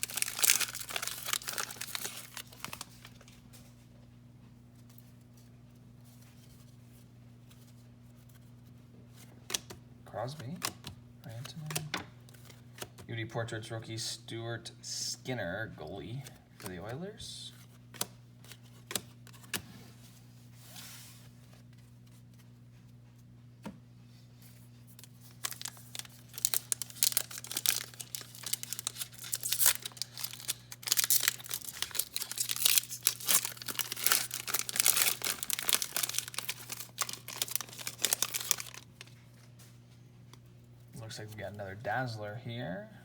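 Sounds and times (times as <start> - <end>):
foil wrapper crinkling and tearing: 0.0 - 3.4, 24.9 - 39.1.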